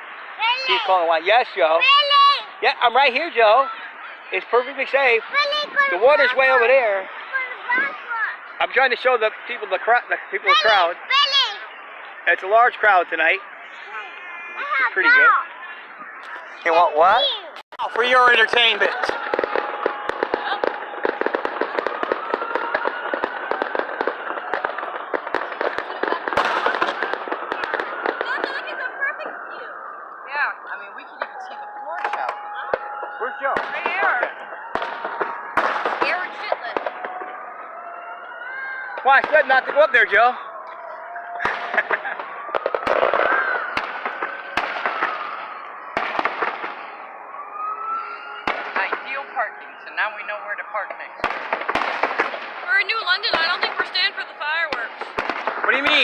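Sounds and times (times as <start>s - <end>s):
fireworks crackling and popping: 0.0s - 56.0s.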